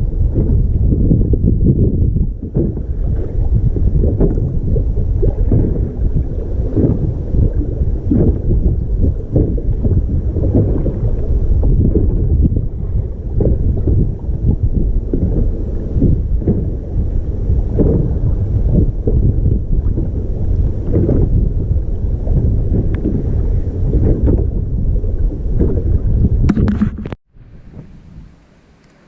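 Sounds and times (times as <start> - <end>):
wind buffeting microphone: 0.0 - 28.5.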